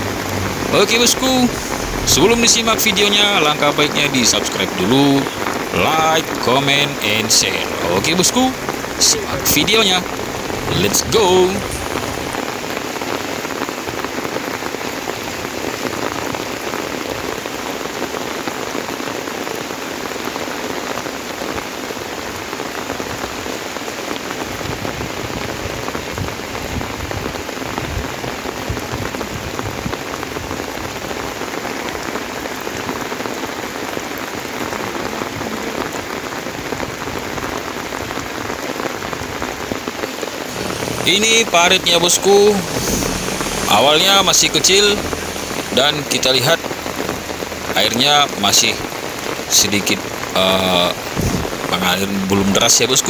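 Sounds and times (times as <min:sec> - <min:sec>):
heavy rain on road: 0:00.0 - 0:53.0.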